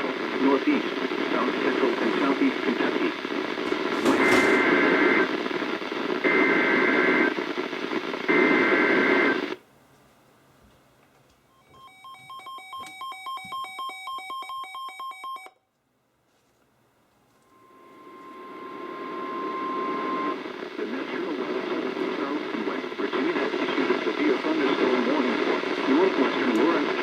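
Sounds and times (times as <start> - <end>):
radio static: 0.0 - 9.6, 17.5 - 27.0.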